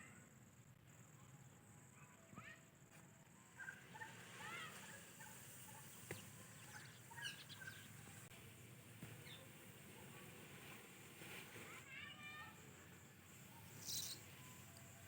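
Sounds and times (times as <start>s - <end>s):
parakeet chirping: 3.6s - 8.2s, 13.5s - 14.6s.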